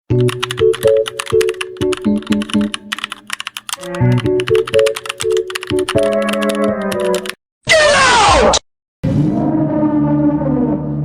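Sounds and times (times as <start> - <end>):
keyboard typing clicks: 0.1 - 7.4.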